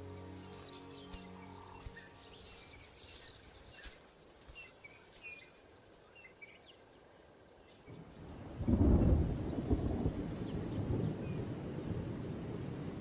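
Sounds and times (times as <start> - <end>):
bush ambience: 0.0 - 8.5.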